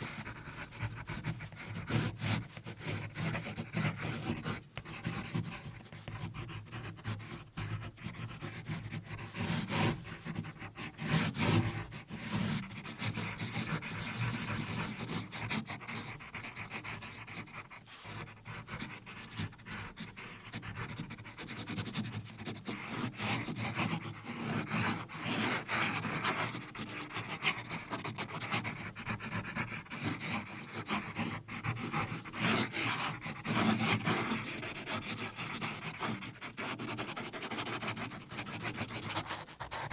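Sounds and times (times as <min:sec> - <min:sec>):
close scratching and rubbing: 0:20.9 - 0:39.9.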